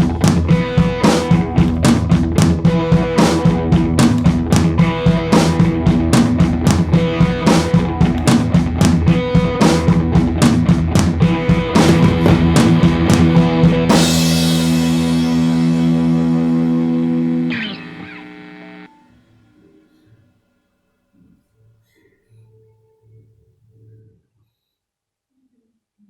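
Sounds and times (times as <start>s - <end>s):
guitar chord ringing: 0.0s - 10.4s, 11.1s - 20.0s
drum kit beat: 0.0s - 18.9s
guitar: 0.0s - 20.5s.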